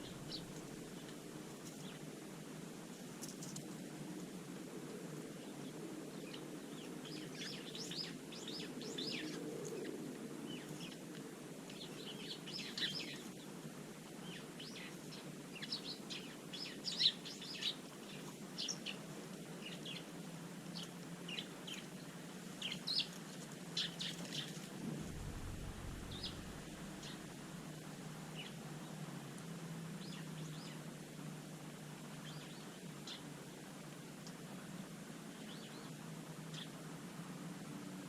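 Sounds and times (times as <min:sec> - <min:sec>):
small birds chirping: 0:00.0 - 0:02.0, 0:14.2 - 0:27.3
faint steady background noise: 0:00.0 - 0:38.0.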